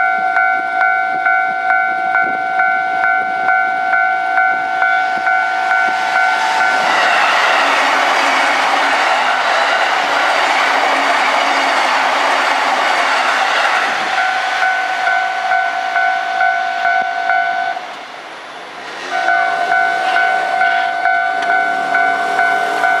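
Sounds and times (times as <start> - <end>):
electric train rolling past: 0.0 - 23.0
level crossing two-tone bell: 14.6 - 17.8.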